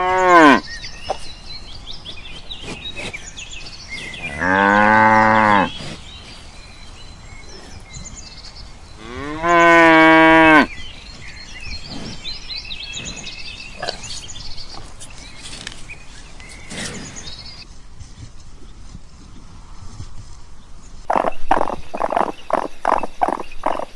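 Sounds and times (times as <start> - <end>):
cow mooing: 4.3 - 5.7.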